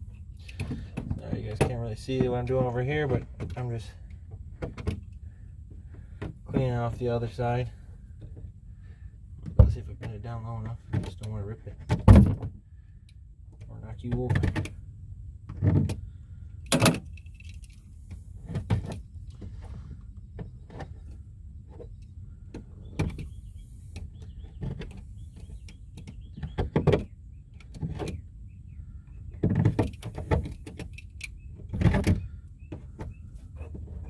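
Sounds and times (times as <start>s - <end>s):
steady low rumble: 0.0s - 26.4s.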